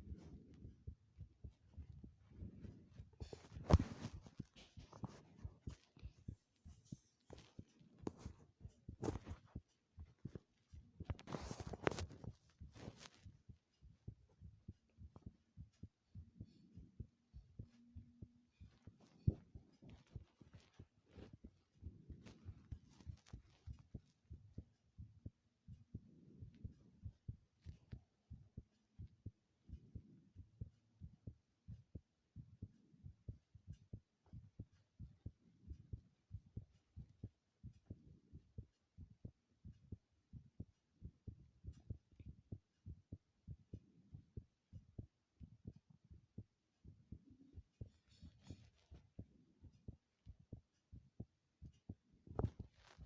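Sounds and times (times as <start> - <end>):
heartbeat thumps: 0.0 - 53.0
scratchy rustle: 2.4 - 6.1, 11.0 - 13.2.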